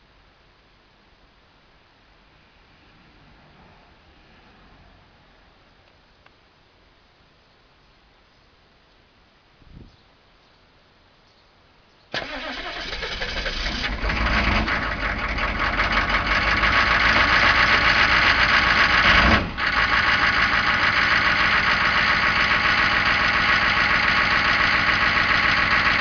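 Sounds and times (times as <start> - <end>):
diesel engine knocking: 13.6 - 26.0.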